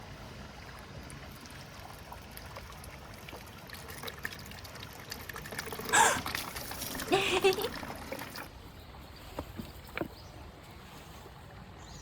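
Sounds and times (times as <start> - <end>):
water trickling: 0.0 - 8.6
small ticks and splashes: 0.6 - 7.1.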